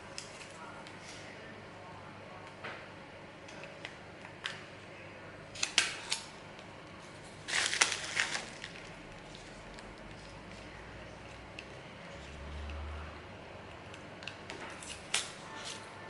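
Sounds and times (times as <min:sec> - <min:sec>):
packaging rustling and clicking: 0:07.5 - 0:10.4.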